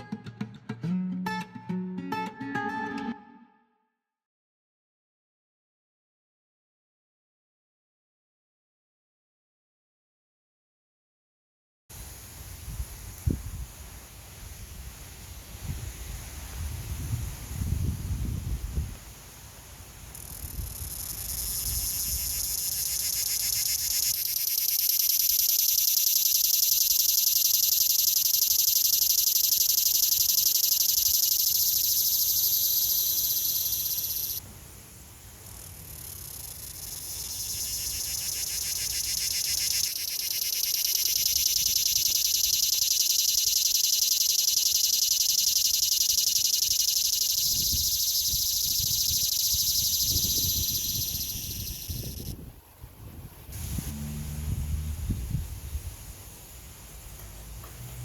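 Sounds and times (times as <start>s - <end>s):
cicada buzzing: 20.1s - 34.4s, 35.4s - 52.4s, 53.6s - 55.9s.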